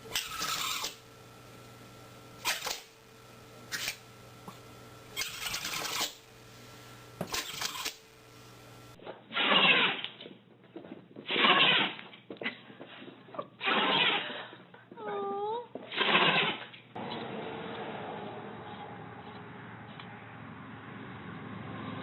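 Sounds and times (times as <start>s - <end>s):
pet sneezing: 11.2s - 12.0s, 13.6s - 14.4s.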